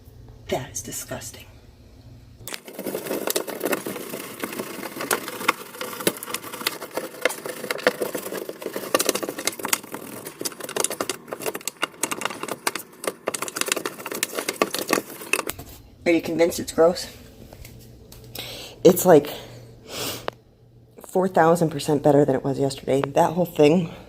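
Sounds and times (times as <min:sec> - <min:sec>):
scrubbing plastic parts: 0:02.5 - 0:15.7.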